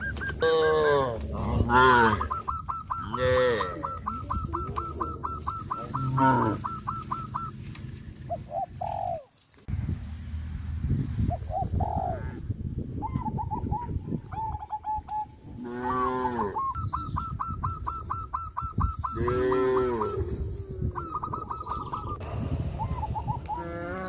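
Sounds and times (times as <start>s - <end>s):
cows mooing: 0.4s - 2.4s, 3.0s - 4.2s, 5.0s - 7.0s, 15.6s - 16.6s, 19.2s - 20.3s, 23.4s - 24.0s
steady low rumble: 9.6s - 14.4s, 21.9s - 24.0s.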